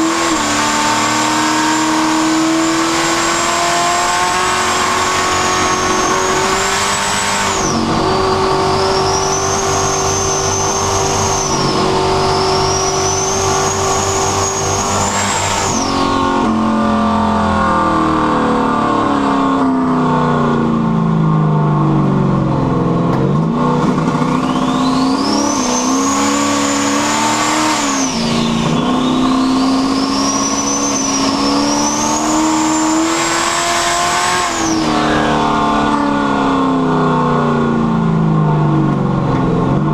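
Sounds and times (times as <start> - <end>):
car engine accelerating: 0.0 - 39.9
turbo whistle: 7.5 - 16.4, 24.2 - 33.1.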